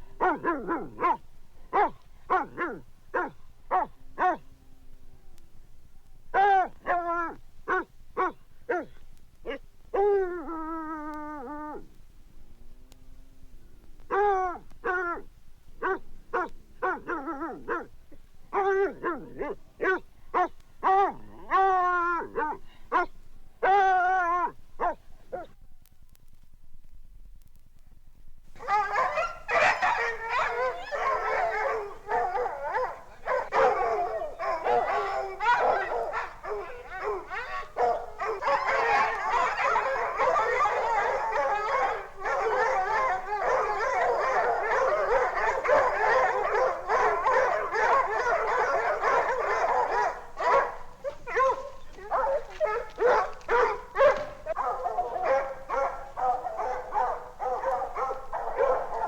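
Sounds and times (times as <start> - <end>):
dogs barking and baying: 0.2 - 4.4, 15.8 - 25.6, 28.5 - 59.0.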